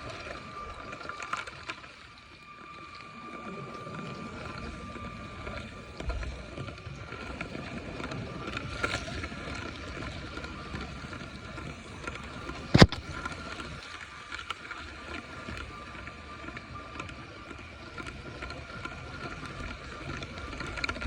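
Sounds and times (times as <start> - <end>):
toy train electric motor whining: 0.0 - 21.0
sharp click: 12.7 - 13.1.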